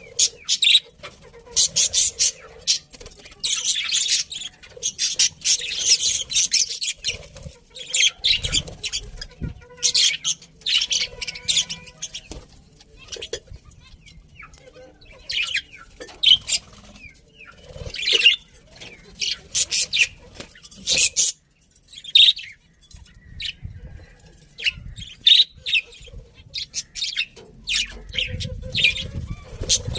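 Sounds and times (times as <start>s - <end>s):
budgerigars chirping: 0.0s - 12.4s, 24.6s - 29.9s.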